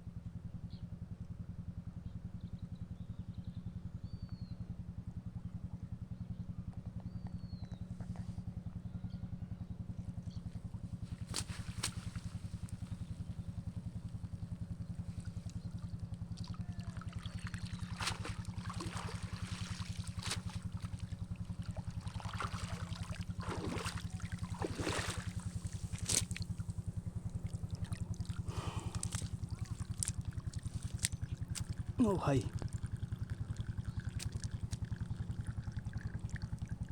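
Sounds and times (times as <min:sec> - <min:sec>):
small engine running: 0:05.0 - 0:36.9
water splashing: 0:16.4 - 0:26.7, 0:27.3 - 0:36.4.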